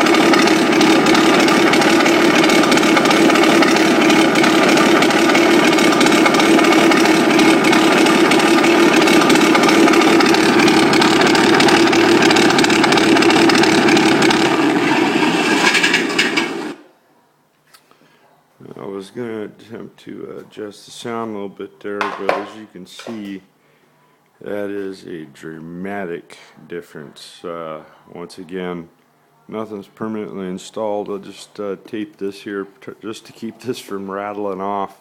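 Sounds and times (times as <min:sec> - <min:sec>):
simulated piston engine through speakers: 0:00.0 - 0:16.9.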